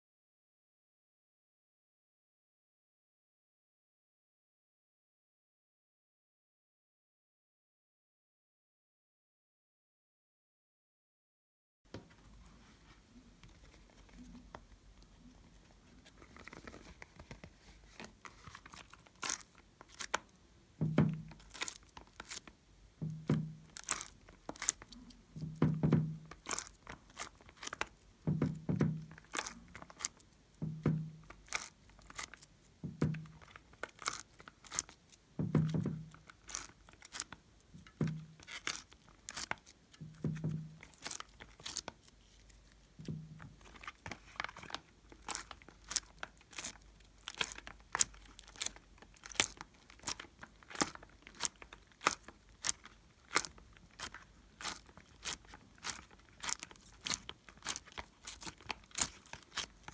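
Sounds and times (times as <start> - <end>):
slime squelching: 12.2 - 59.9
slime clicking and popping: 18.6 - 59.9.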